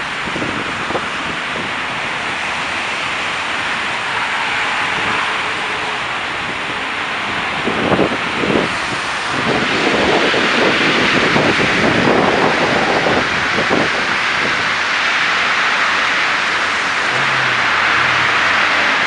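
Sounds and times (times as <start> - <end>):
tyres hissing on wet road: 0.0 - 19.0
wind buffeting microphone: 4.8 - 14.8
engine rumble: 15.9 - 19.0
low engine hum: 16.4 - 19.0.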